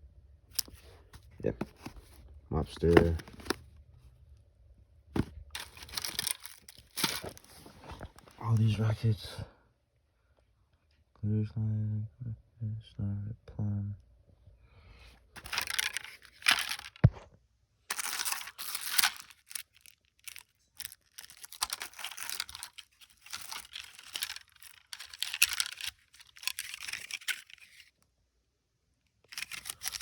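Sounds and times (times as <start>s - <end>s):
plastic packaging crinkling: 1.7s - 3.6s, 5.2s - 8.8s, 15.4s - 17.0s, 17.9s - 27.9s, 29.3s - 30.0s.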